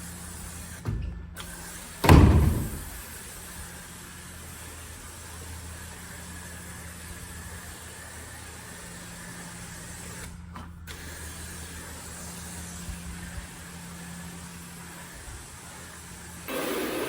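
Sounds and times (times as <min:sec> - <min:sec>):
carpet cleaning machine running: 0:16.4 - 0:17.0.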